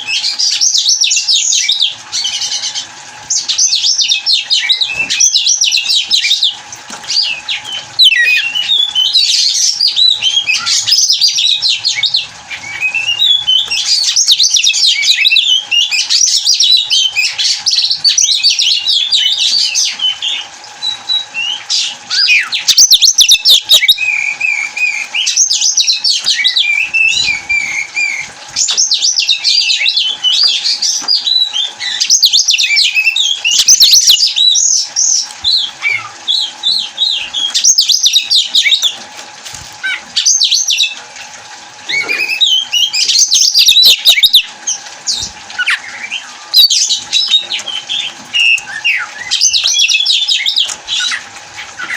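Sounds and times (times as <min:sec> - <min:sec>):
songbird singing: 0:07.2 - 0:38.9.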